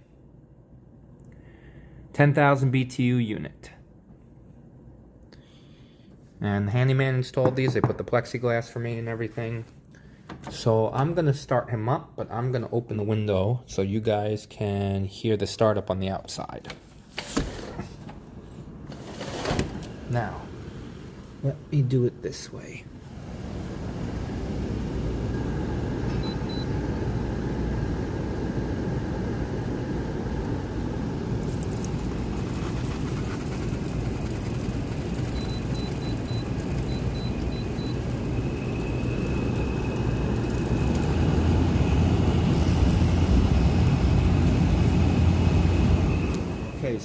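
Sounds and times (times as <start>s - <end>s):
air conditioner running: 0.0s - 47.0s
low hum: 19.7s - 47.0s
short beeps: 35.3s - 38.1s.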